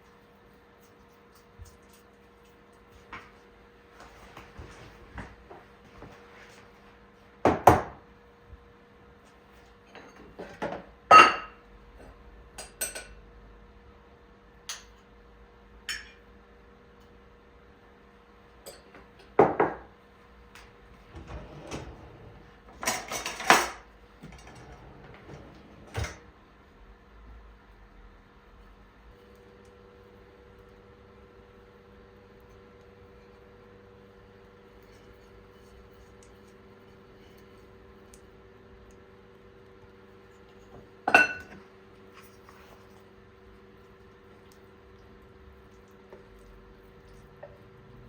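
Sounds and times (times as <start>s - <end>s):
dishes and utensils clinking: 10.0s - 11.6s, 12.6s - 13.2s, 22.8s - 24.7s, 41.1s - 41.6s.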